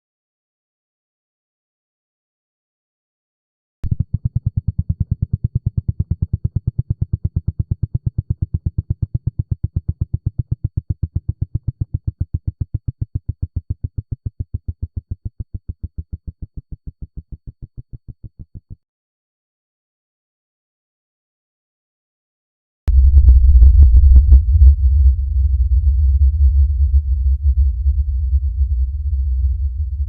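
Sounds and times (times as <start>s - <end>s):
low synth tone pulsing: 3.8s - 18.7s, 22.9s - 30.0s.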